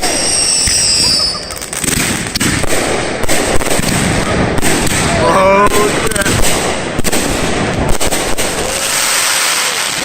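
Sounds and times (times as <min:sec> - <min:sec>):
firework whistles: 0:00.0 - 0:02.4
firework crackling and popping: 0:00.0 - 0:10.0.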